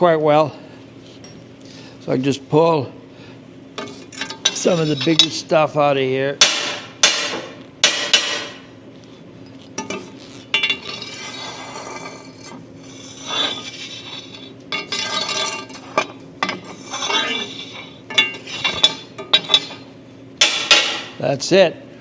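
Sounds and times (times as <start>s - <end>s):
steel rod scraping inside metal tube: 4.5s - 5.4s, 10.2s - 19.8s.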